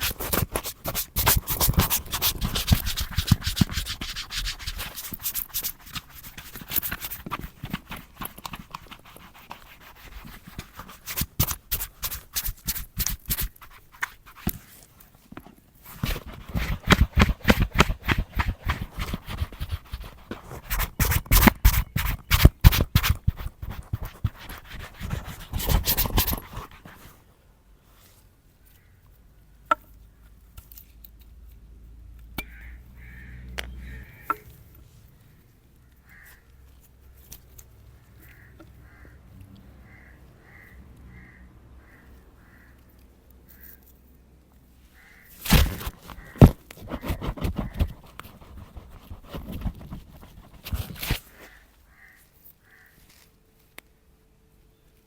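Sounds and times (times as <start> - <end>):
brush scrubbing leather boot: 0.0 - 14.7, 15.9 - 27.1, 45.5 - 51.6.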